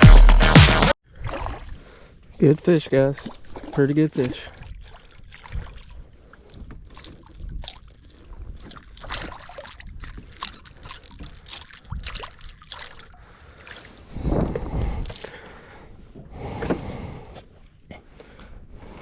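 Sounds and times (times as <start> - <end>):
water splashes and drips: 1.1 - 15.4
wind rumble on microphone: 14.1 - 15.2.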